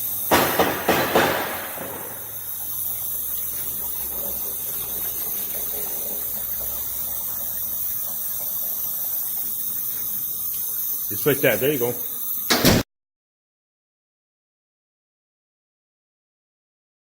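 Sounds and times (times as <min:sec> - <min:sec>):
spray bursts: 0:00.0 - 0:12.8
steady pressurized hiss: 0:00.0 - 0:12.8.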